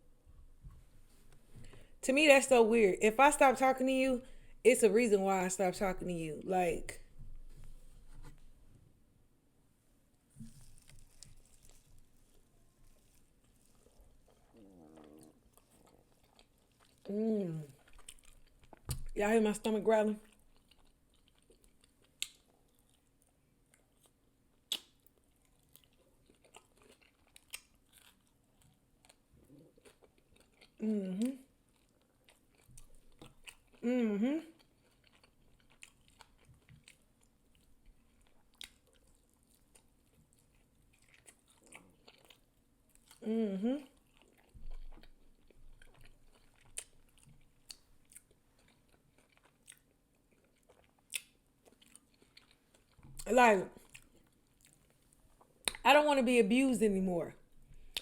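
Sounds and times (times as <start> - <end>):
chewing mouth noises: 10.4 - 19.2, 20.2 - 33.9, 34.5 - 43.2, 43.8 - 55.8.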